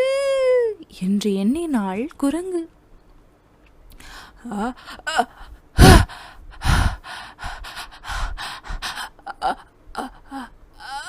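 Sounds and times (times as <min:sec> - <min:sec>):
woman gasping: 0:04.0 - 0:11.0.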